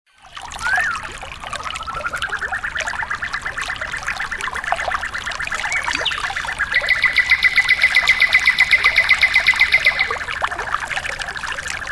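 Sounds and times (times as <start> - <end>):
trickling water: 0.1 - 11.9
bird singing a trill: 0.6 - 1.1, 5.6 - 10.2.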